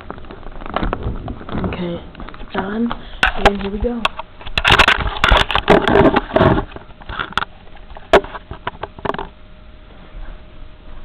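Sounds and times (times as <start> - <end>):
rustling and clattering: 0.0 - 11.0.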